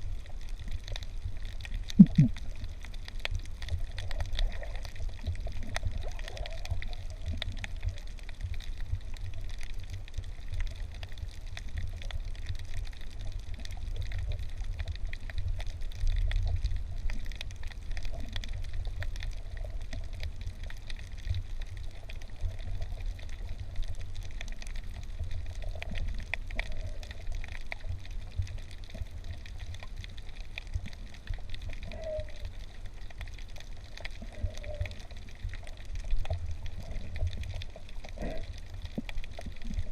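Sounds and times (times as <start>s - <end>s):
fine crackle of clicks: 0.0s - 39.9s
underwater rumble of moving water: 0.0s - 39.9s
faint bubbling tone: 1.8s - 2.7s.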